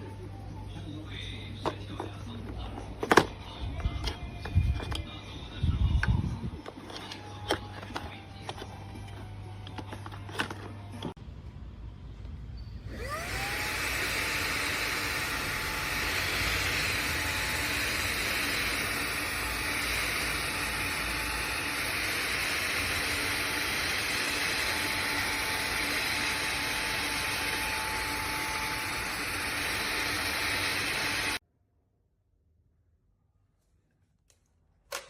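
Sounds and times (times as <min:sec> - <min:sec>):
handheld vacuum cleaner whine: 0:12.6 - 0:31.4.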